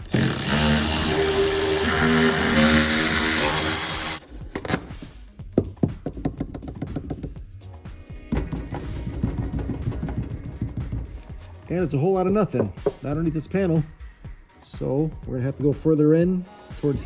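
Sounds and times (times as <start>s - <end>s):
power tool spinning nuts: 0.0s - 4.2s.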